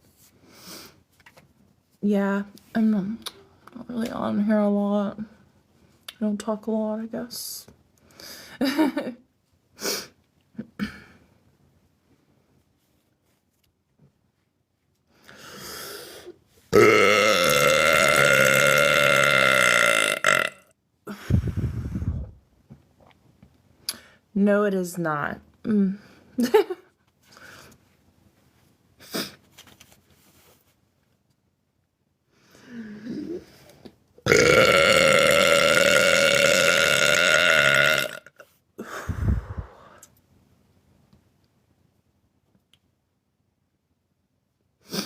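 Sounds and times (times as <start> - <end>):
long loud burp: 16.7 - 20.7, 34.3 - 38.4
woman belching: 16.8 - 20.6, 34.3 - 38.3
rising throat sound: 21.3 - 22.4, 38.9 - 39.9.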